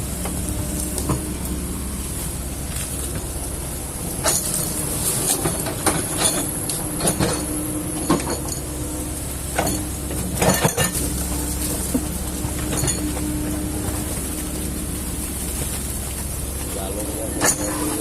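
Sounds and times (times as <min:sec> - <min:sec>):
excavator diesel engine humming: 0:00.0 - 0:18.0
knocks and clanks: 0:04.2 - 0:08.8, 0:09.5 - 0:14.4, 0:15.6 - 0:18.0.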